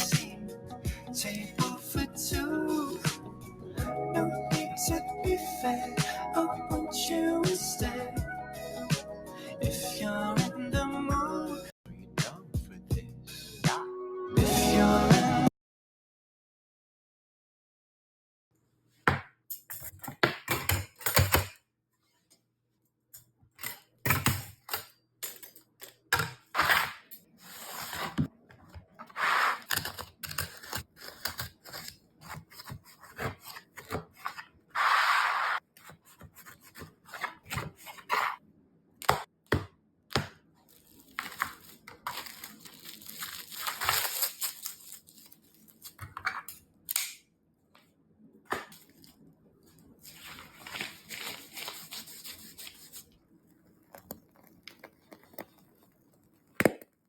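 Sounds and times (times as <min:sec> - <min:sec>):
packaging rubbing and tearing: 0:29.1 - 0:35.6, 0:40.7 - 0:46.0, 0:50.0 - 0:56.6.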